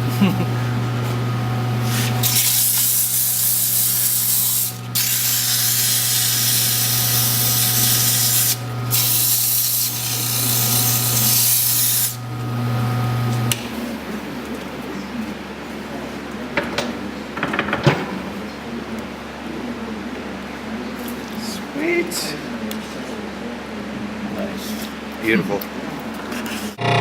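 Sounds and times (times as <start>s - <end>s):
router hissing cut in wood: 0.0s - 13.5s, 26.6s - 27.0s
machine hum: 0.0s - 20.7s, 26.7s - 27.0s.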